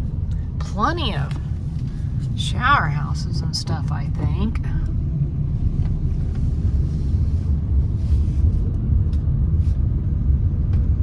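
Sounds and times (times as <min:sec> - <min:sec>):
vehicle driving slowly: 0:00.0 - 0:11.0.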